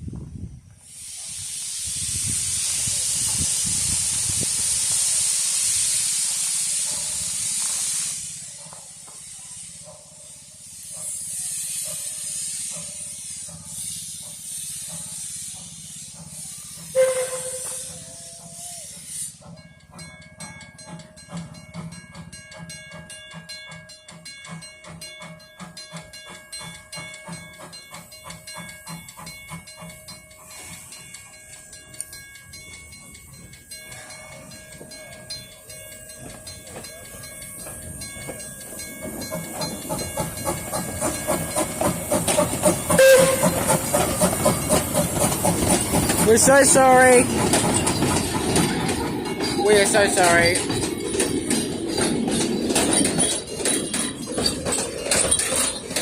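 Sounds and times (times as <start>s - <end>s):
steam locomotive hissing: 0.0s - 56.0s
train wheels clicking on rails: 0.0s - 56.0s
steam train whistle: 11.3s - 19.4s, 42.9s - 43.8s.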